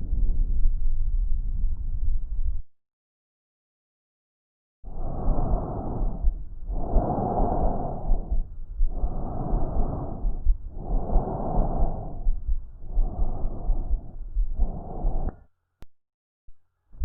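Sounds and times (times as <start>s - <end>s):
breath sounds through stethoscope: 4.9s - 15.5s.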